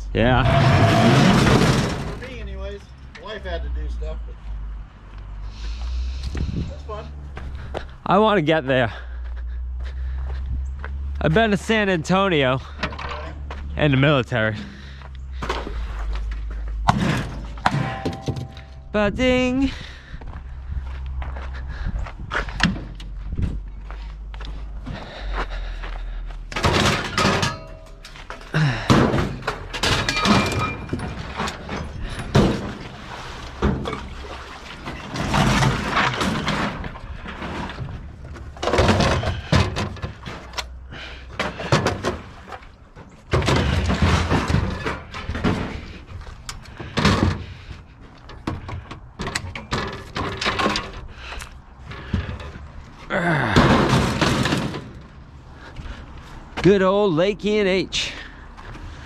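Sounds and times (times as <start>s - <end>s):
scrap metal crashing: 0.2s - 2.9s, 16.8s - 19.0s, 26.5s - 48.7s, 49.3s - 55.4s.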